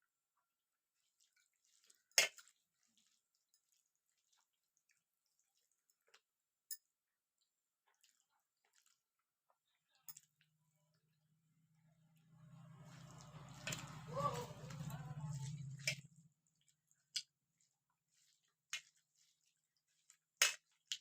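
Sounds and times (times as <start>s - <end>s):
soft clicks and squishes: 0.3s - 11.1s, 12.8s - 21.0s
wet eating sounds: 1.0s - 6.2s, 7.8s - 9.9s, 12.0s - 21.0s.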